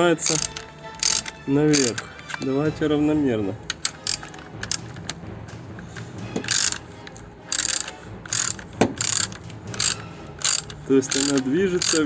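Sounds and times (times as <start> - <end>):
ratchet wrench clicking: 0.2 - 2.4, 3.7 - 5.2, 6.3 - 12.0.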